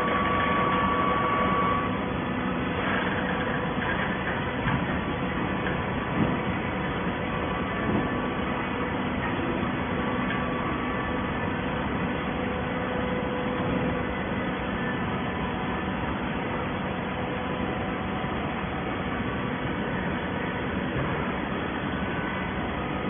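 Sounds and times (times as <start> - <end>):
industrial machinery whirring hum: 0.0 - 23.0.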